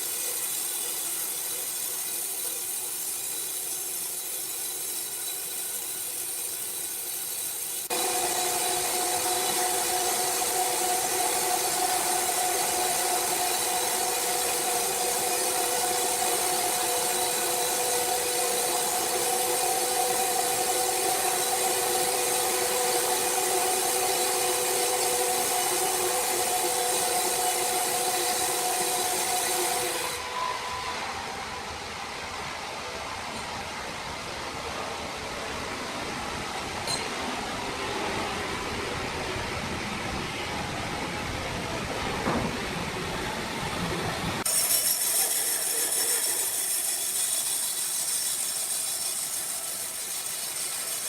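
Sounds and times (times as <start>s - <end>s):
saw cutting wood: 0.0s - 30.5s, 44.4s - 51.0s.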